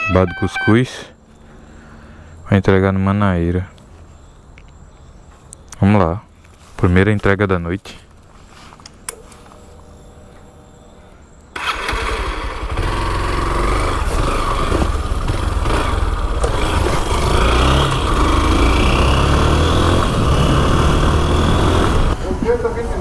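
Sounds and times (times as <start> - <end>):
motorcycle engine starting and riding: 8.1 - 23.0.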